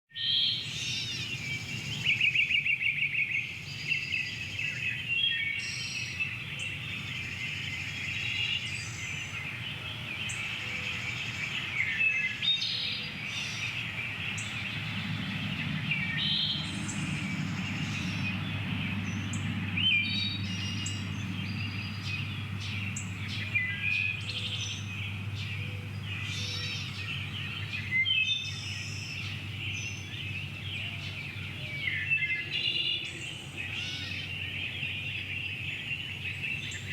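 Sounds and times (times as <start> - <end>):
birds chirping and calling: 0.3 - 36.9
low steady rumble: 12.6 - 31.8.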